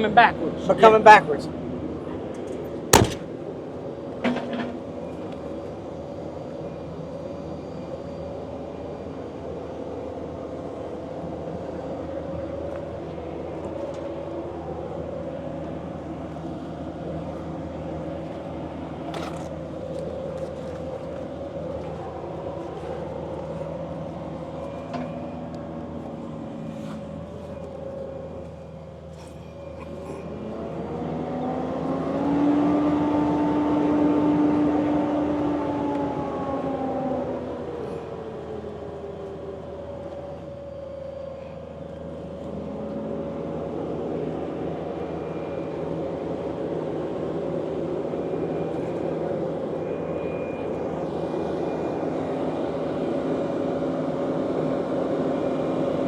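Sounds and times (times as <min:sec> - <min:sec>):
sharp metallic knocks: 0:03.0 - 0:03.3
diesel engine running: 0:08.8 - 0:56.0.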